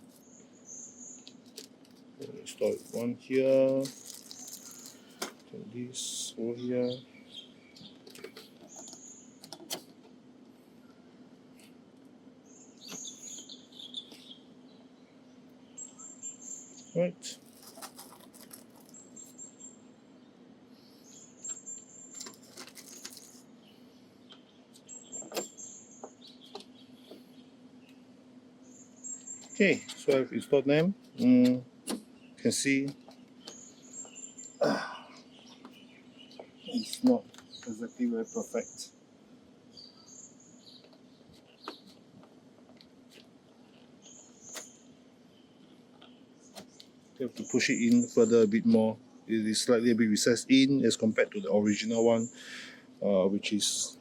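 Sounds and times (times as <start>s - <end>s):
steady low hum: 0.0s - 54.0s
faint bird chirps: 12.4s - 22.2s, 22.8s - 39.0s, 43.6s - 54.0s.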